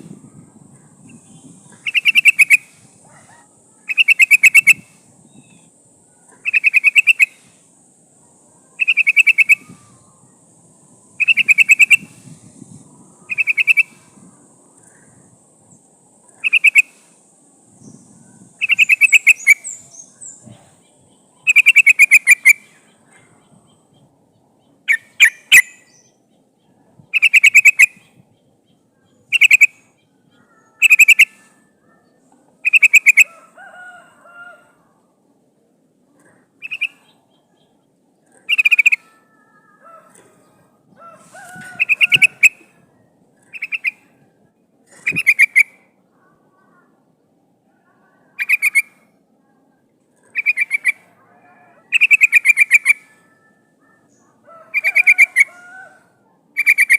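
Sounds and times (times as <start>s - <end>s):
bird chattering calls: 1.0s - 4.8s, 6.2s - 7.4s, 8.8s - 10.0s, 11.2s - 12.1s, 13.2s - 14.0s, 16.3s - 17.0s, 18.4s - 20.3s, 21.4s - 22.8s, 24.8s - 25.9s, 27.1s - 28.1s, 29.2s - 31.4s, 32.6s - 33.3s, 36.6s - 37.3s, 38.4s - 39.1s, 41.5s - 42.8s, 43.4s - 44.1s, 45.0s - 45.8s, 48.4s - 49.0s, 50.3s - 51.1s, 51.9s - 53.0s, 56.6s - 56.9s.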